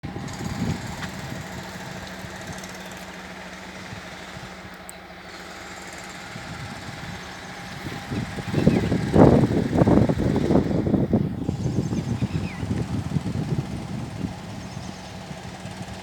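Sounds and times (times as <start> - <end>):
engine humming: 0.0 - 16.0.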